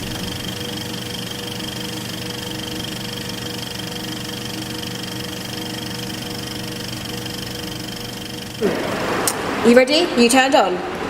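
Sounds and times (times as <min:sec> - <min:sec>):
machine humming whirr: 0:00.0 - 0:11.0.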